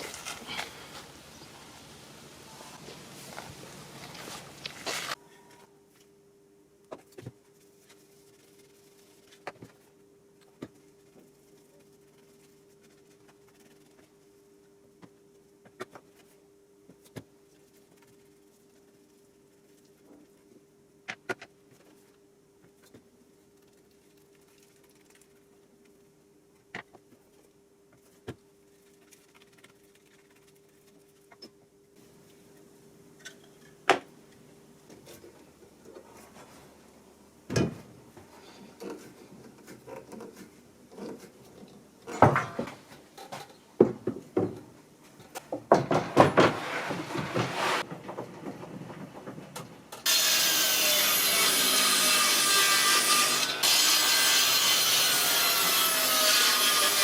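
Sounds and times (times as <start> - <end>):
faint steady hum: 0.0 - 46.0
scraping and rubbing: 2.8 - 5.2, 46.1 - 49.2.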